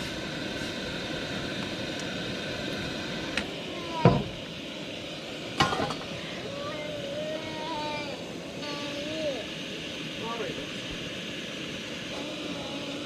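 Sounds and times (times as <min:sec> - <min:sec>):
steady hiss: 0:00.0 - 0:13.0
cookware clinking and knocking: 0:05.6 - 0:06.0.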